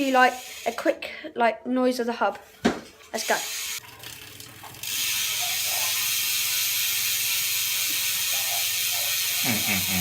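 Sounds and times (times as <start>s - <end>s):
bicycle hub ratcheting buzz: 4.8s - 10.0s.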